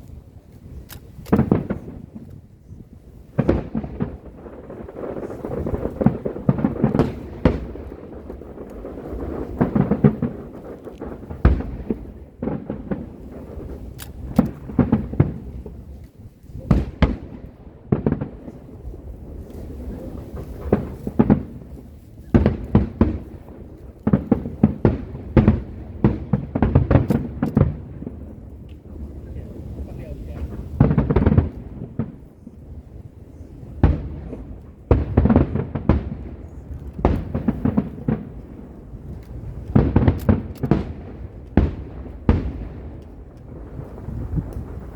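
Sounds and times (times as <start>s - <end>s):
fireworks bangs and booms: 0.0s - 44.9s
low rolling rumble: 0.0s - 44.9s.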